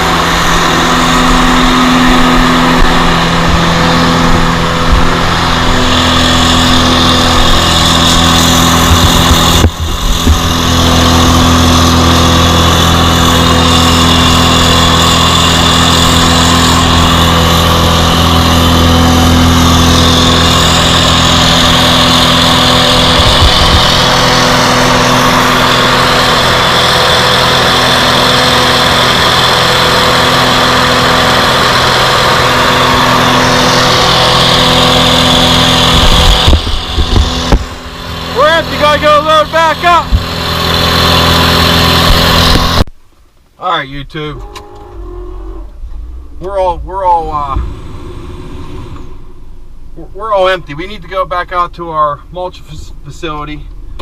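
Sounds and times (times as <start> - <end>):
mulch rushing through hose: 0.0 - 42.8
bark blower engine droning: 0.0 - 54.0.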